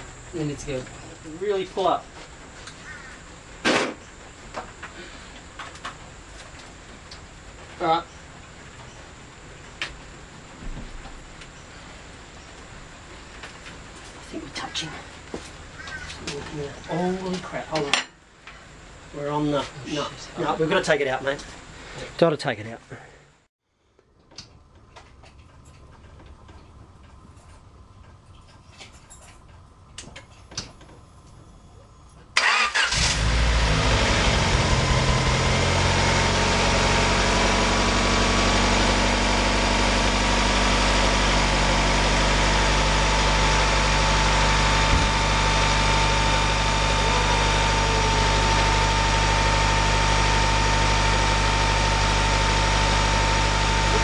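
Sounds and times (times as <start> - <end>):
car engine idling: 0.0 - 8.1, 32.4 - 54.0
thin steady whine: 0.0 - 15.6, 33.6 - 54.0.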